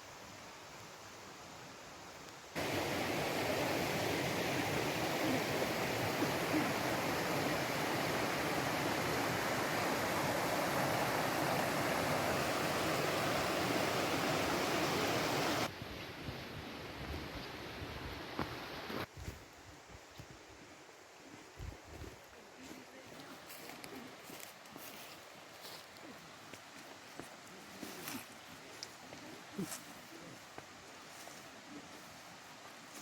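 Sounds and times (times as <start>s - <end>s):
mountain stream rushing: 0.0s - 15.8s.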